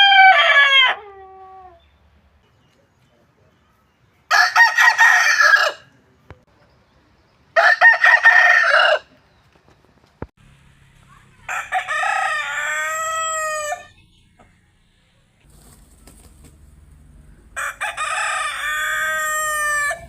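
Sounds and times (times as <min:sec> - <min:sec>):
roosters crowing: 0:00.0 - 0:01.9, 0:04.3 - 0:06.0, 0:07.5 - 0:09.2, 0:10.4 - 0:20.0.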